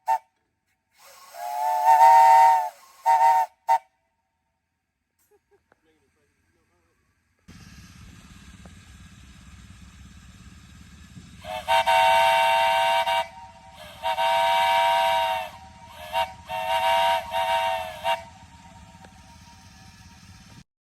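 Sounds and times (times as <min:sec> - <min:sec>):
steam hiss: 0:01.0 - 0:03.8
three-chime steam whistle blasts: 0:01.0 - 0:03.8, 0:11.4 - 0:20.6.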